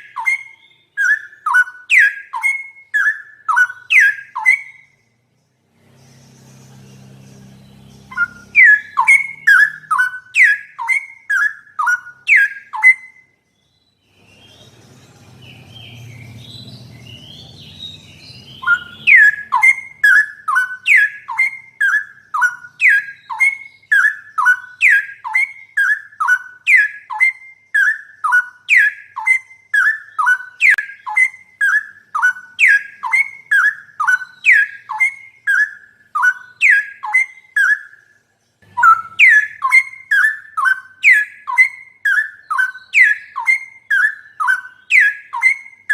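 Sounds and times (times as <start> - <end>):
bird whistled calls: 0.0 - 5.0, 5.8 - 13.4, 14.2 - 45.9.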